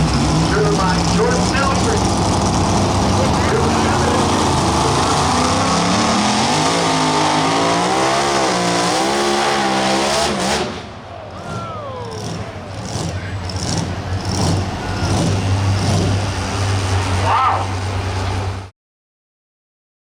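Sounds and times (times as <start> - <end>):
falling whine: 0.0 - 8.0
engine at full throttle: 0.0 - 18.7.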